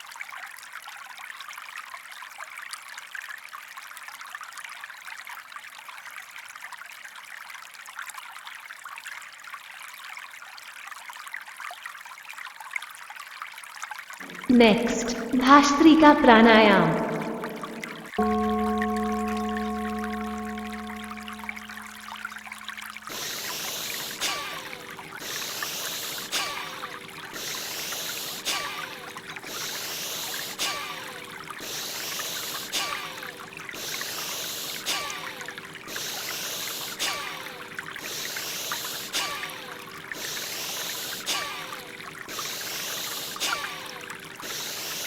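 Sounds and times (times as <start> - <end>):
trickling water: 0.0 - 45.0
faint steady tone: 14.2 - 45.0
forceful hissing breaths: 23.1 - 45.0.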